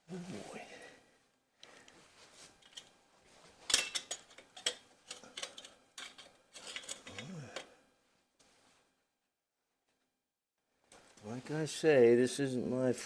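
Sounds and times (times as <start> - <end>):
metal hand tools clinking: 3.7 - 7.7.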